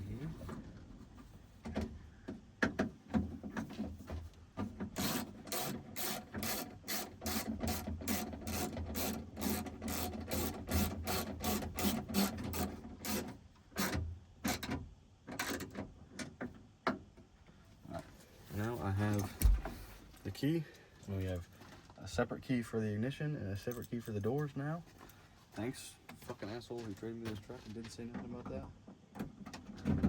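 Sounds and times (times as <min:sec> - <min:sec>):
hand ratchet rasping: 0:05.0 - 0:14.7.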